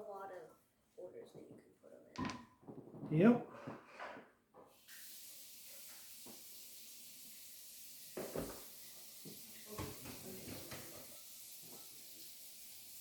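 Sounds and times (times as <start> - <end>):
faint hiss: 4.7 - 13.0.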